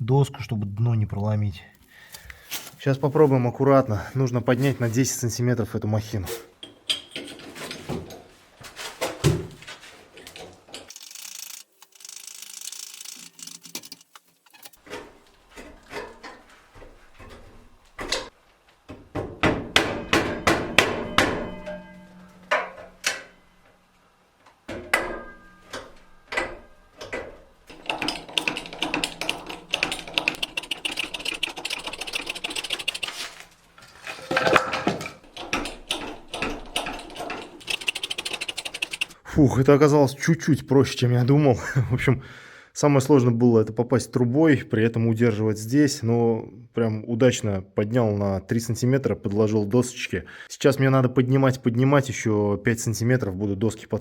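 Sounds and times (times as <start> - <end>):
jack mechanism clicking: 10.8 - 14.8, 25.7 - 33.2, 35.3 - 39.2.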